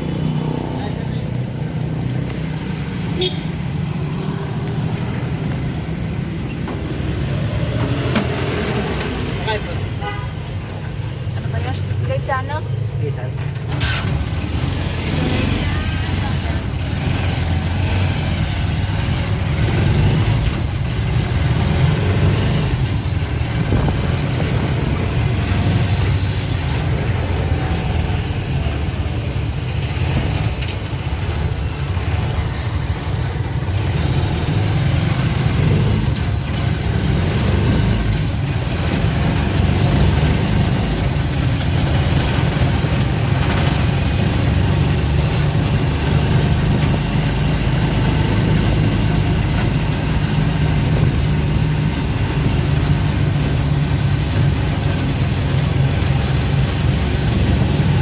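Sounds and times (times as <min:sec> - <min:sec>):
road noise: 0:00.0 - 0:58.0
vehicle engine rumble: 0:00.0 - 0:58.0.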